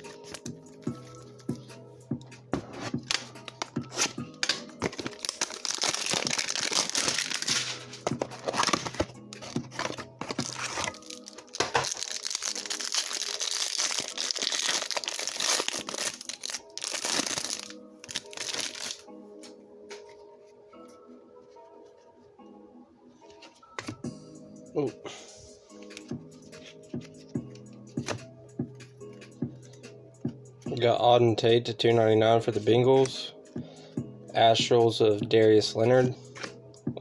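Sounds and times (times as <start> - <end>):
background music: 0.0 - 37.0
plastic wrapping tearing and crinkling: 3.0 - 19.0.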